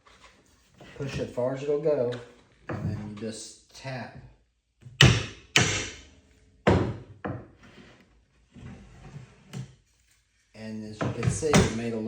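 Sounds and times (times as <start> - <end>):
sharp wooden knocks: 4.9 - 6.0, 6.7 - 7.5, 11.0 - 11.8.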